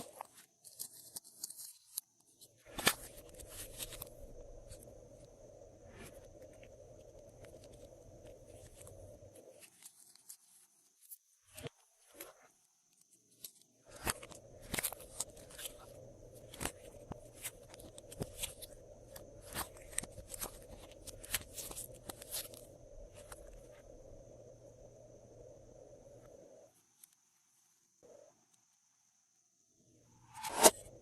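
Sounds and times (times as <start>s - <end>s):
steady low hum: 14.3s - 26.8s.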